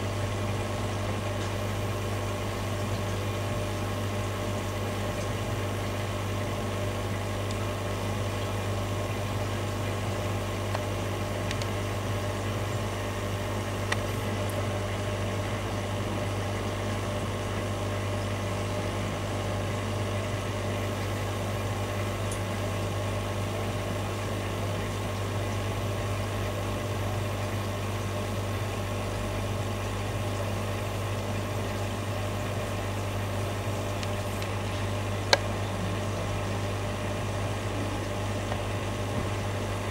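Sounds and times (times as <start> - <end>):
low electrical hum: 0.0 - 39.9.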